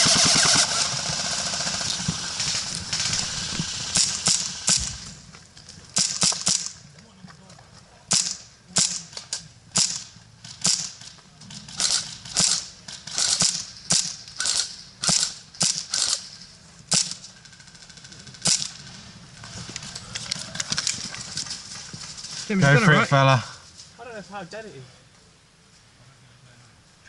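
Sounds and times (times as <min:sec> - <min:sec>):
airsoft guns firing: 0:00.0 - 0:05.1, 0:06.0 - 0:06.8, 0:08.1 - 0:11.1, 0:11.7 - 0:16.2.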